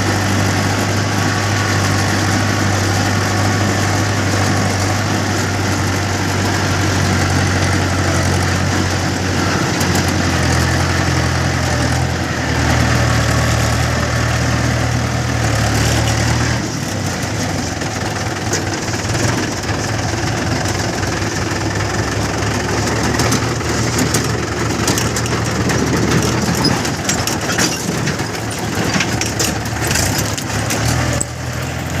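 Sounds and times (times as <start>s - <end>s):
heavy diesel engine running: 0.0s - 32.0s
sharp knocks and clatters: 22.8s - 31.4s.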